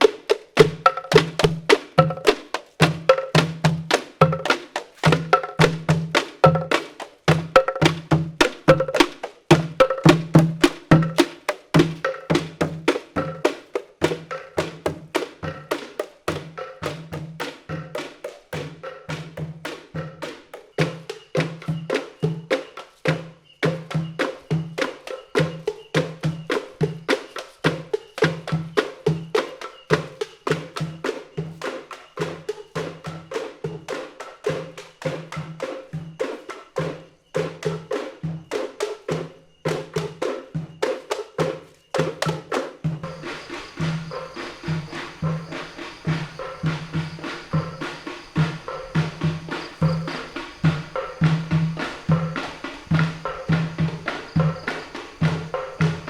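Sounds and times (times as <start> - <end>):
low drum beat: 0.6 - 21.8, 42.9 - 56.0.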